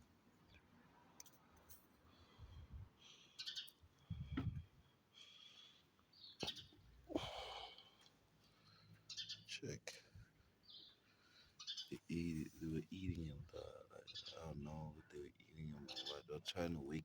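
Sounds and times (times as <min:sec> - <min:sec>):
sparrows chirping: 0:02.1 - 0:07.8, 0:08.5 - 0:17.0
faint low thumps: 0:04.1 - 0:04.7.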